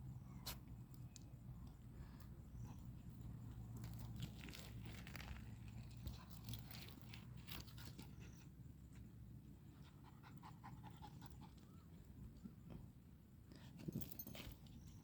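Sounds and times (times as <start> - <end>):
puppy panting faintly: 9.7 - 12.2.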